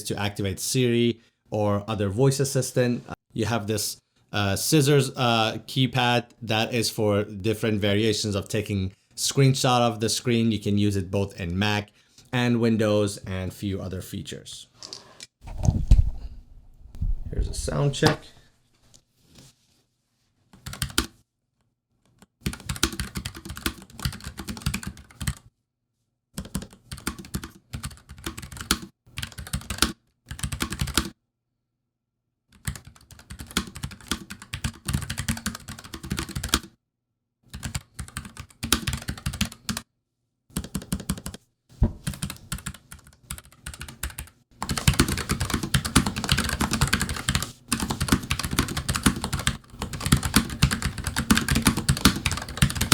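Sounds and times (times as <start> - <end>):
typing on mechanical keyboard: 20.6 - 21.1, 22.4 - 25.4, 26.4 - 31.1, 32.6 - 36.7, 37.6 - 39.8, 40.6 - 41.4, 42.0 - 52.9.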